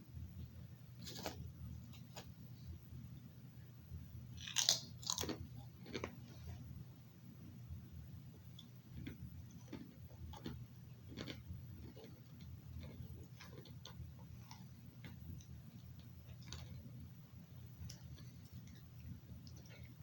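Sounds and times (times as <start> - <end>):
low steady hum: 0.0 - 20.0
person chewing crunchy chips: 4.4 - 6.2, 9.0 - 14.8, 16.3 - 16.8.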